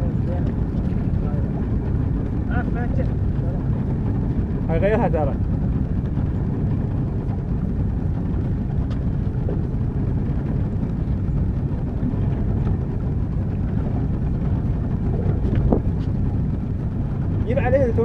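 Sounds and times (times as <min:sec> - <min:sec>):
motorboat engine drone: 0:00.0 - 0:18.0
water rushing: 0:00.0 - 0:18.0
wind rushing: 0:00.0 - 0:18.0.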